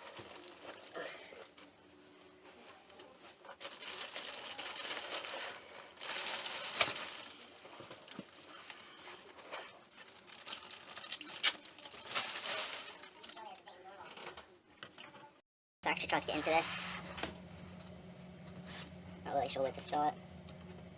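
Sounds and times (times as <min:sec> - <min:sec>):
packaging rustling and crinkling: 0:00.0 - 0:14.4.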